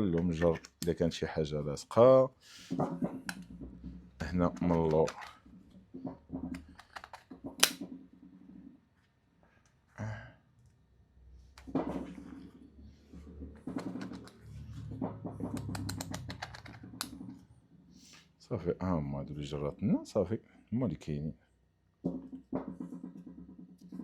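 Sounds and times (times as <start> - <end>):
magnet clicks and taps: 6.0 - 8.0, 15.4 - 17.3.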